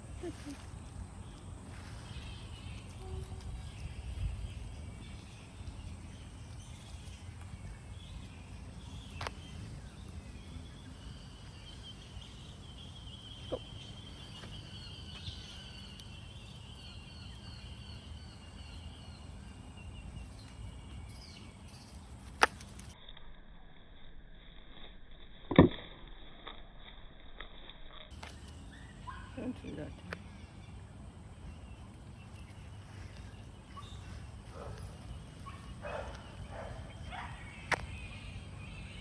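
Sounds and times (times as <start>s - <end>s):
steady low rumble: 0.0s - 22.7s, 28.1s - 39.0s
birds chirping: 0.0s - 23.0s, 28.1s - 39.0s
sharp clicks: 21.9s - 23.0s.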